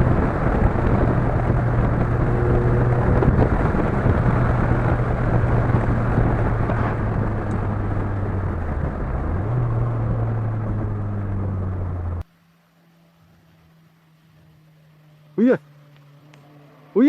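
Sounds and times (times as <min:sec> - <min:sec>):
tyre and wind noise: 0:00.0 - 0:12.2
car engine droning: 0:00.0 - 0:17.0.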